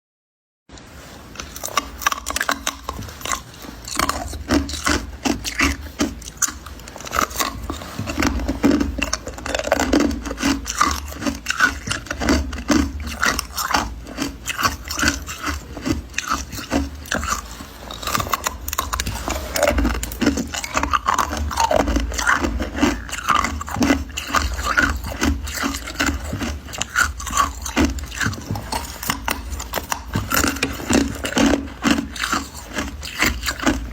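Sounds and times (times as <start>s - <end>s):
ice being chewed: 0.8s - 33.9s.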